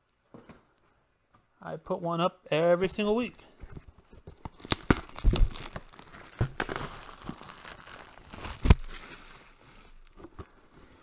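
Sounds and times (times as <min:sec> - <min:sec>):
plastic wrap crinkling and tearing: 0:04.2 - 0:10.6.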